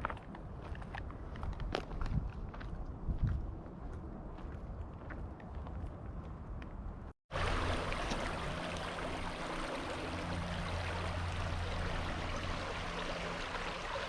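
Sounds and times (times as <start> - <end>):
creek water rushing: 7.3 - 14.0.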